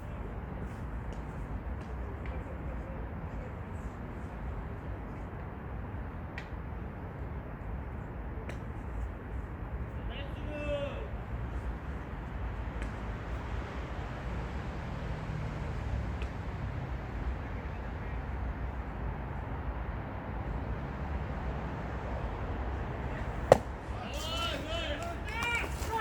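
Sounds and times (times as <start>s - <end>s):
baseball bat crack: 23.3s - 26.0s.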